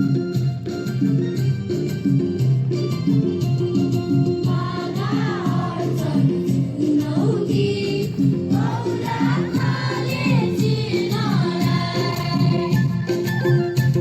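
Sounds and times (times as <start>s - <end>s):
instrumental accompaniment: 0.0s - 14.0s
group of voices singing: 4.4s - 12.8s.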